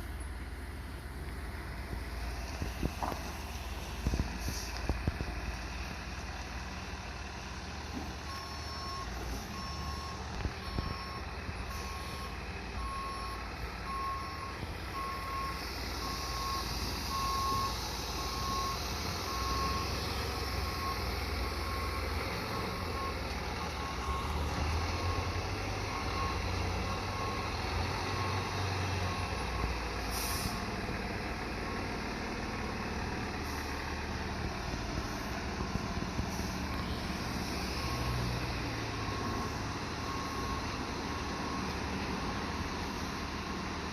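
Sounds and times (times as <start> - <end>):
diesel engine running: 0.0 - 43.9
hiss of air: 30.0 - 30.6.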